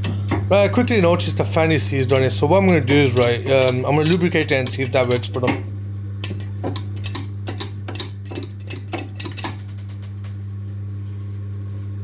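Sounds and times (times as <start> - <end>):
steady low hum: 0.0 - 12.0
light metallic clicks and taps: 2.1 - 5.6, 6.2 - 9.6.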